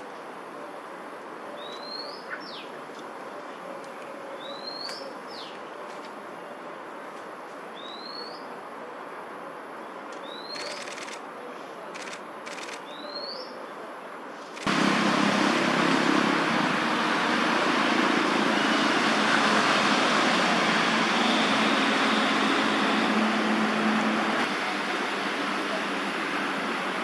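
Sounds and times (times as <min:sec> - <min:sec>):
sharp clicks: 0:10.1 - 0:11.2
loud steady rushing noise: 0:14.6 - 0:27.0.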